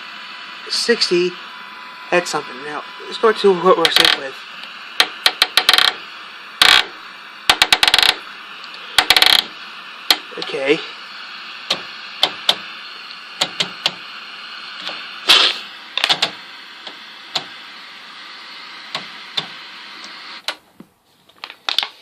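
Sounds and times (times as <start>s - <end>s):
television static hiss: 0.0s - 22.0s
rotary knob clicking: 5.0s - 6.0s, 6.6s - 6.9s, 7.5s - 8.2s, 9.0s - 9.5s.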